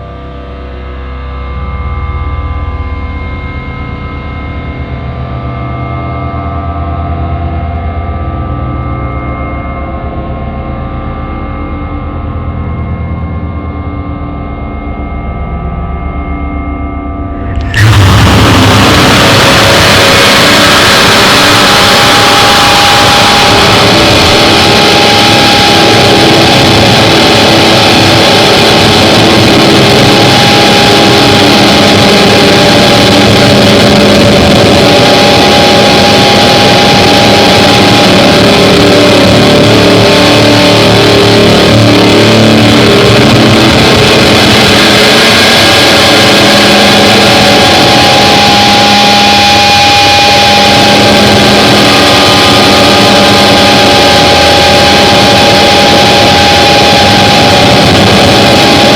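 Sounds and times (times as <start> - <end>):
distorted noise drone: 0.0 - 58.9
steady high drone tone: 0.0 - 58.9
low shifting noise layers: 17.1 - 58.9.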